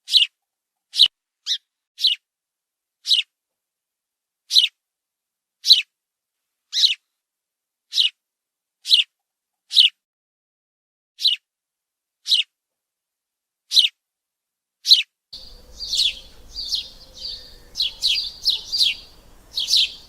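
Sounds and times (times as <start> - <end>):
sparrow chirping: 15.4 - 20.0.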